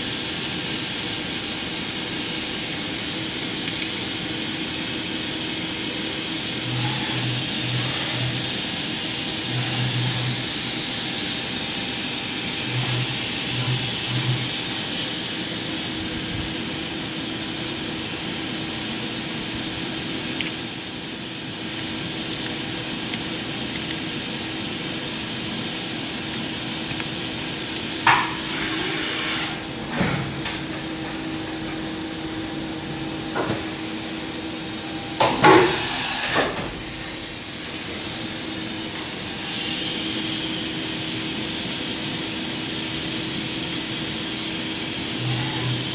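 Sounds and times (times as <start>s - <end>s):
machining center humming and whining: 0.0s - 45.9s
machine clunks: 29.8s - 32.0s.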